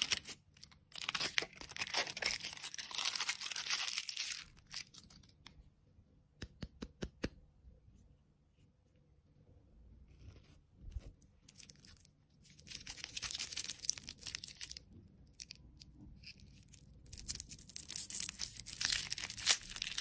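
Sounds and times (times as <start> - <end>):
plastic candy wrapper crinkling: 0.0 - 5.4, 11.5 - 20.0.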